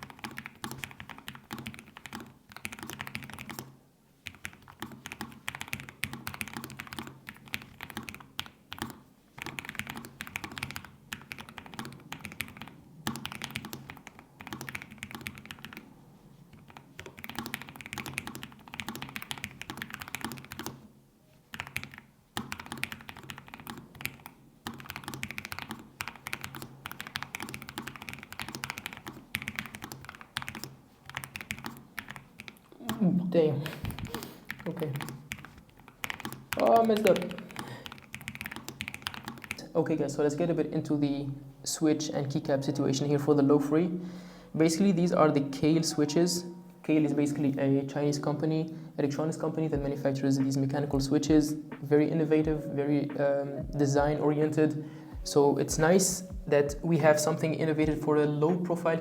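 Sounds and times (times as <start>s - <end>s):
fast keyboard typing clatter: 0.0s - 15.9s, 16.5s - 20.8s, 21.5s - 33.0s, 33.6s - 39.7s.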